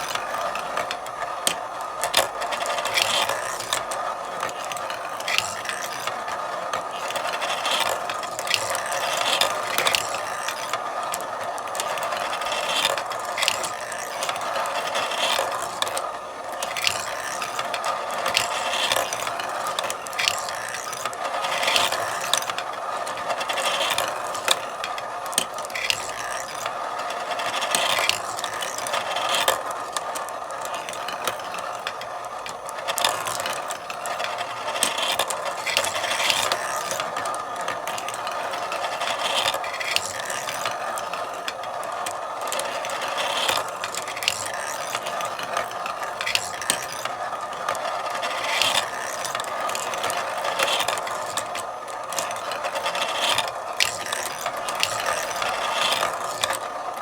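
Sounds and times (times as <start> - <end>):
marbles rolling and clattering: 0.0 - 56.7.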